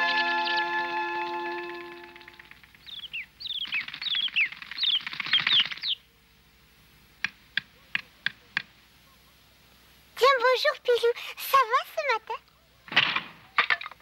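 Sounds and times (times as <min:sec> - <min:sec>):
birds chirping: 0:00.0 - 0:06.3
wings fluttering: 0:01.6 - 0:06.0.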